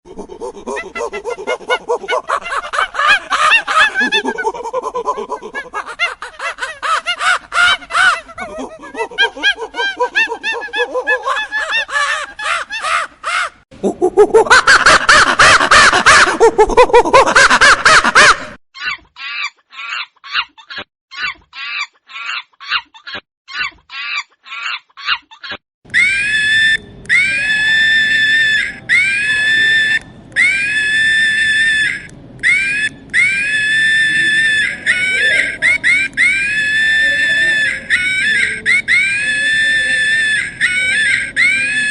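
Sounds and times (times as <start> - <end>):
monkeys screaming and shrieking: 0.1 - 13.6, 17.8 - 41.9
monkey long pitched calls: 0.1 - 14.6, 26.0 - 41.9.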